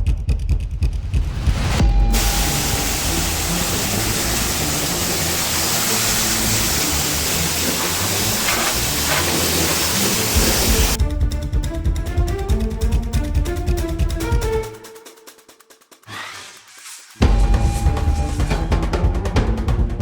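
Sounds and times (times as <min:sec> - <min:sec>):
music: 0:00.0 - 0:20.0
pressure washer spraying: 0:02.1 - 0:11.0.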